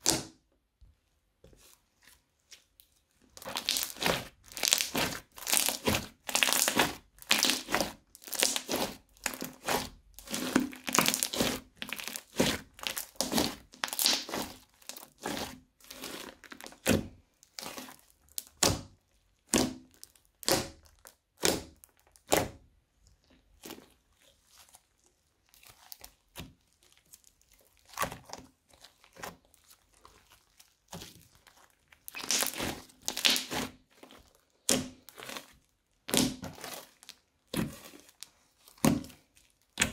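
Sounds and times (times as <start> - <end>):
crunchy slime squishing: 1.5 - 39.9.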